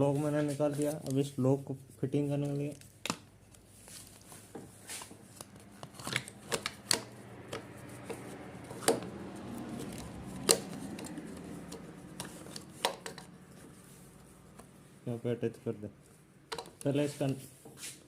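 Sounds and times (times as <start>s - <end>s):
clicks and knocks of small parts: 5.4s - 8.2s, 8.8s - 13.3s, 16.5s - 16.9s.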